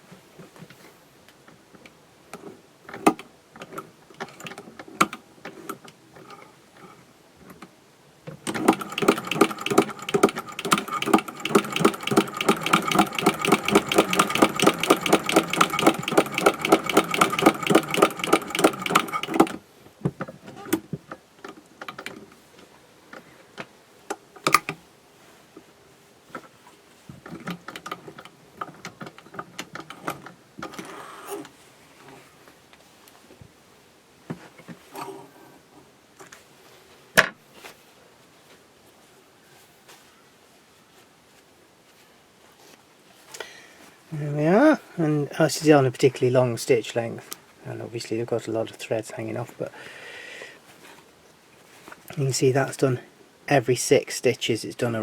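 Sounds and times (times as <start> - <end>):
handling clicks and knocks: 8.3 - 22.3
sewing machine stitching: 8.4 - 19.6.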